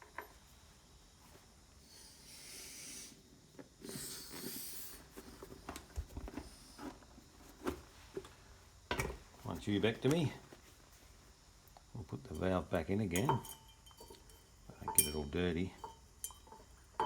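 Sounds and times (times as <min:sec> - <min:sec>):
rustling hisses: 0:01.8 - 0:03.2, 0:03.8 - 0:05.4.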